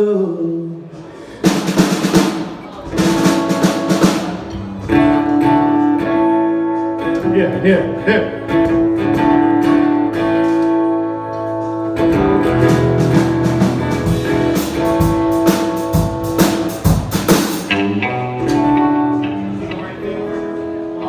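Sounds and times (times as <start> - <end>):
sharp percussive hits: 1.4 - 4.7, 12.7 - 17.8
strummed guitar chords: 1.4 - 21.0
bass line: 12.0 - 19.1.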